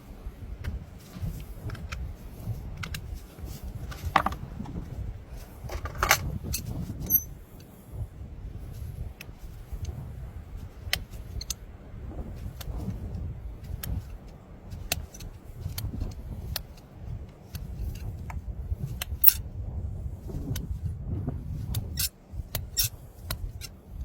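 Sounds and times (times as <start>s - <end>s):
hoof trimming tools scraping: 1.0s - 4.8s, 5.4s - 7.3s.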